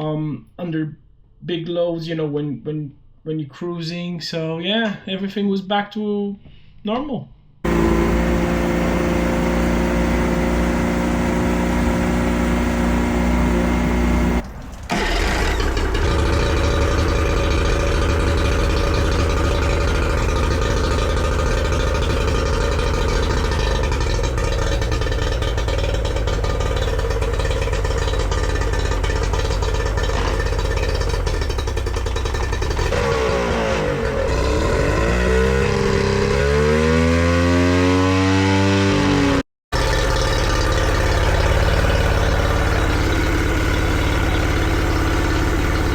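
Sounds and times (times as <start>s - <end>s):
outboard motor running: 7.7s - 45.9s.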